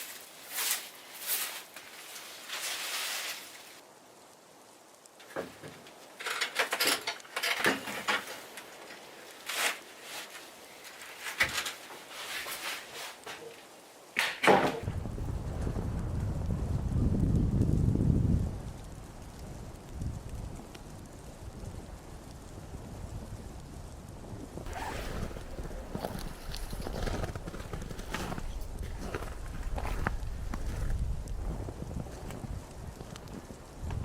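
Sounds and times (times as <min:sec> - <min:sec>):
rustling and scraping handling: 0:00.0 - 0:03.8, 0:05.2 - 0:13.8, 0:24.7 - 0:32.6
wind rumbling on microphone: 0:14.8 - 0:34.0.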